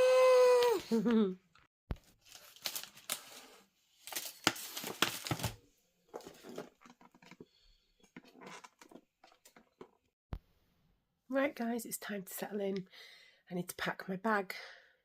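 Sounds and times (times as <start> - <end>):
rustling crinkling and tearing: 2.0 - 5.6.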